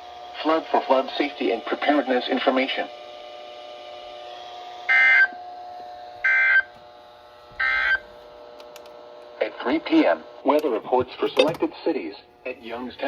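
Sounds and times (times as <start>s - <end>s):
two-tone digital squawks: 6.3s - 6.7s, 7.6s - 8.0s.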